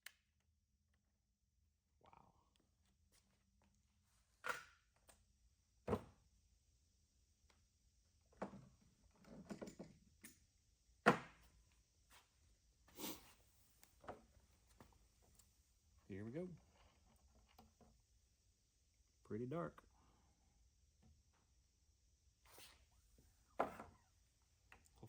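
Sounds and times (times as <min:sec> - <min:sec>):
tools and metal parts clunking: 0:09.2 - 0:10.0.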